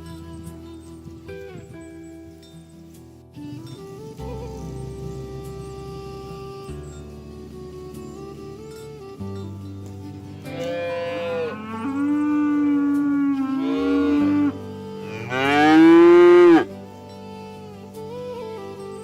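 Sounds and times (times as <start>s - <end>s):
music: 0.0s - 19.0s
cattle mooing: 10.4s - 16.7s.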